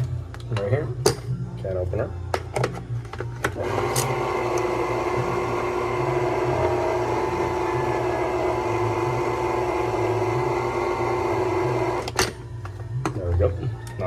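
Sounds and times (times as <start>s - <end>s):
can opener motor humming: 3.6s - 12.2s.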